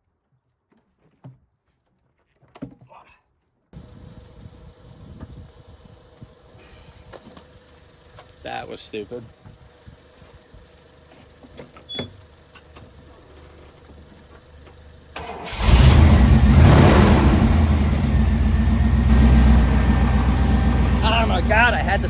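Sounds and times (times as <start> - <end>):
car engine cranking and idling: 3.8 - 22.0.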